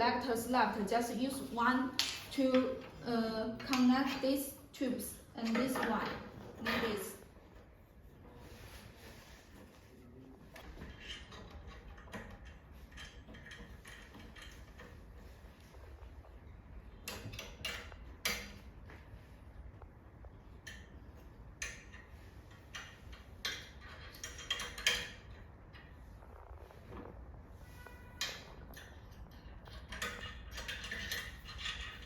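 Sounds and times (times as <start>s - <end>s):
metal tubes clinking and knocking: 10.6s - 15.4s, 20.5s - 25.9s, 28.0s - 32.0s.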